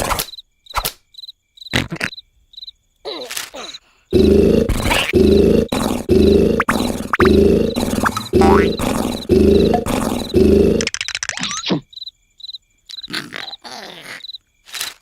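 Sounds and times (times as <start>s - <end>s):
cricket chirps: 0.0s - 15.0s
cartoon character snoring: 4.1s - 10.9s.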